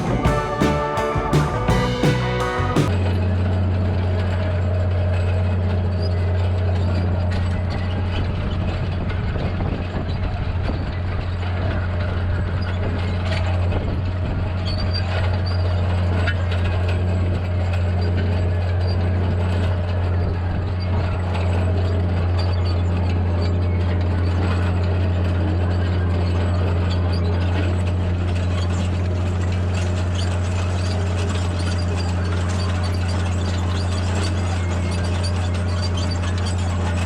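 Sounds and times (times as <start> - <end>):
tractor engine under load: 0.0 - 37.0
plough clanks and rattles: 14.9 - 37.0.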